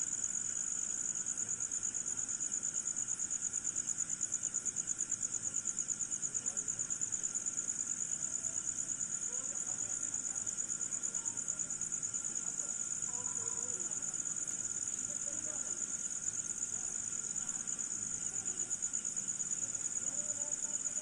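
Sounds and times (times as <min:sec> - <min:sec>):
crickets trilling: 0:00.0 - 0:21.0.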